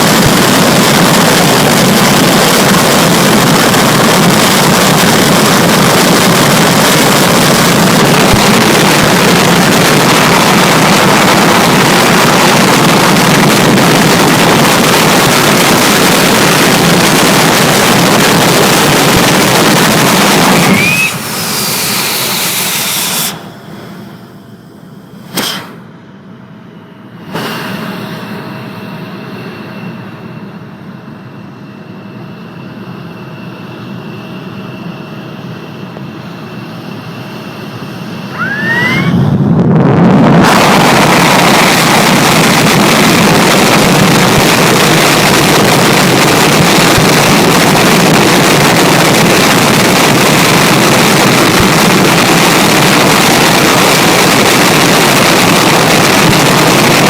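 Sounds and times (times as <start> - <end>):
jet engine whine and roar: 0.0 - 57.0
rushing hiss: 20.8 - 23.5.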